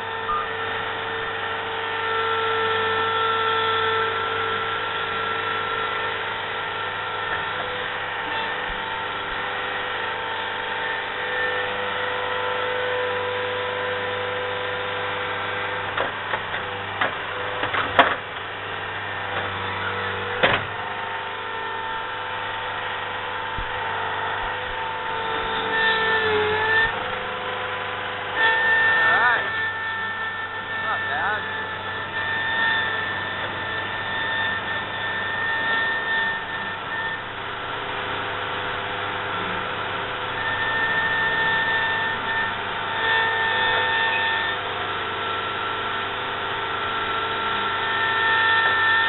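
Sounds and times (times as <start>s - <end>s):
diesel engine whining: 26.8s - 43.0s.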